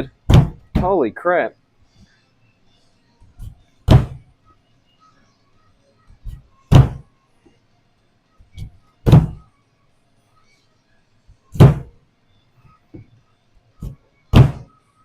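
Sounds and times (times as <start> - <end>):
heavy chopping thuds: 0.3 - 1.0, 3.9 - 4.2, 6.7 - 7.0, 9.0 - 9.4, 11.6 - 12.0, 13.8 - 14.7.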